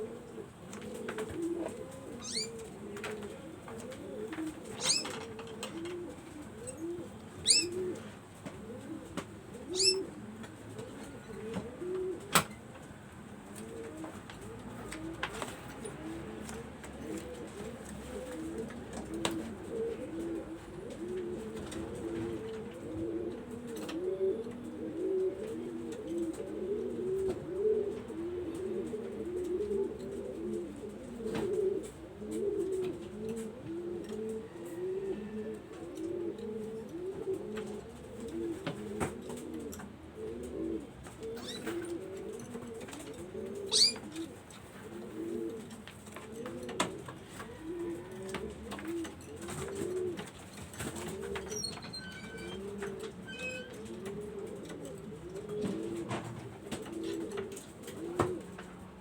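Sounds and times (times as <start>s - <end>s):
pigeons cooing: 0.0s - 59.0s
sharp high bird call: 4.8s - 5.1s.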